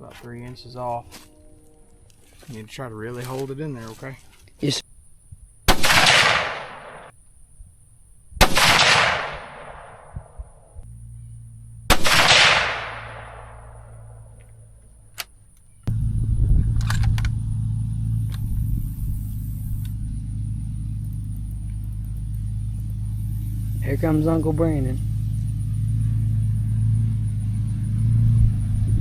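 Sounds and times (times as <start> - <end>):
rifle shots echoing: 5.7 - 7.1, 8.4 - 10.2, 11.8 - 14.2
vehicle engine running: 10.8 - 29.0.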